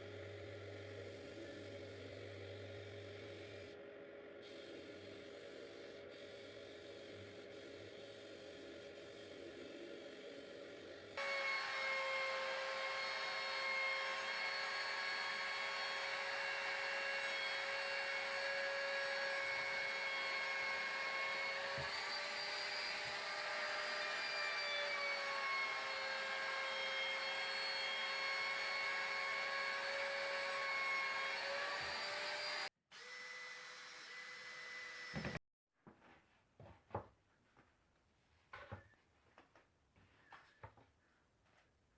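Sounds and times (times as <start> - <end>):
power tool motor whining: 11.2 - 35.4.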